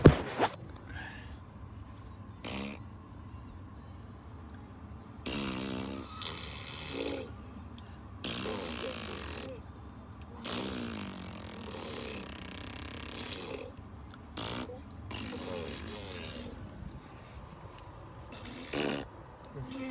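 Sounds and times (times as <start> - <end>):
baby blowing raspberries: 2.4 - 2.8, 5.3 - 7.4, 8.2 - 9.6, 10.3 - 13.7, 14.4 - 17.1, 18.3 - 19.9
car interior hum: 19.2 - 19.9.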